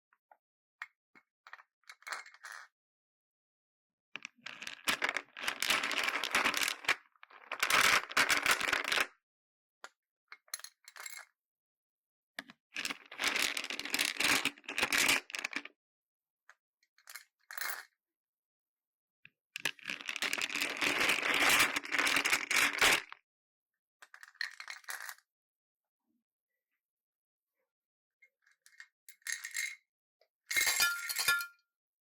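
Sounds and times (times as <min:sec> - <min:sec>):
beads clicking and rattling: 0:04.4 - 0:09.1, 0:12.8 - 0:15.7, 0:19.6 - 0:23.1.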